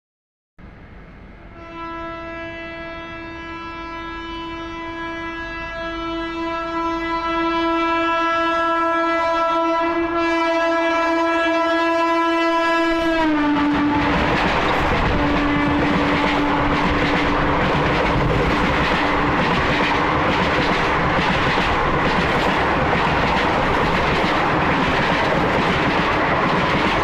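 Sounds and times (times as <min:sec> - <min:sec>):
locomotive horn blast: 0:01.5 - 0:14.2, 0:15.0 - 0:17.4
train rushing past: 0:12.4 - 0:27.0.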